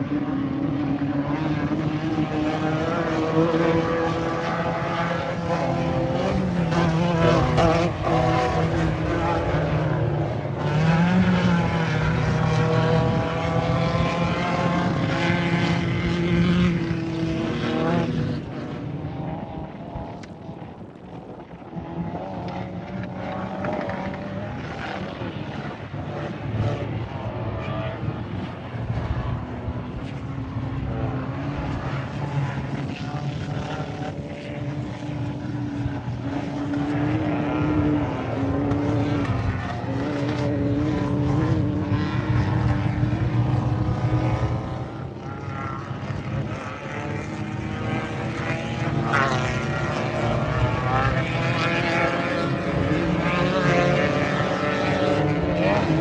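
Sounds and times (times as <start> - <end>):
buggy engine running hard: 0.0 - 56.0.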